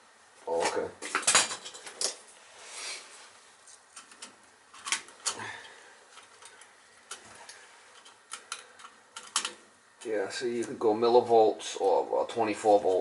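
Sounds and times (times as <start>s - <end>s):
soft hiss: 0.0s - 13.0s
tools and metal parts clicking: 8.0s - 9.6s.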